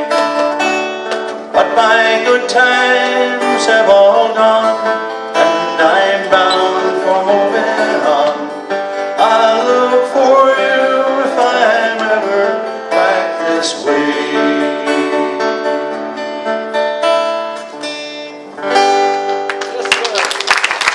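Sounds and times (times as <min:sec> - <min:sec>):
acoustic guitar strumming: 0:00.0 - 0:19.6
man singing folk song: 0:01.4 - 0:16.0.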